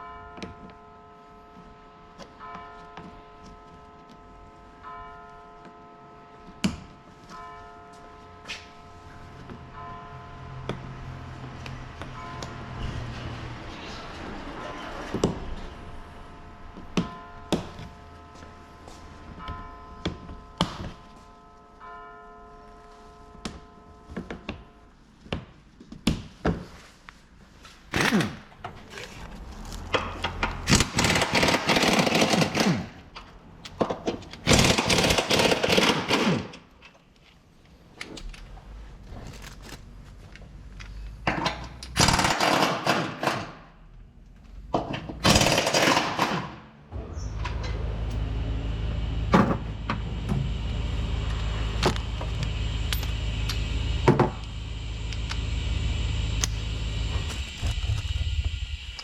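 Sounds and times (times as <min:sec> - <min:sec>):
power tool running: 0:27.9 - 0:33.0, 0:34.4 - 0:36.3, 0:42.0 - 0:42.9, 0:46.9 - 0:59.0
steady low hum: 0:37.2 - 0:42.2, 0:46.7 - 0:59.0.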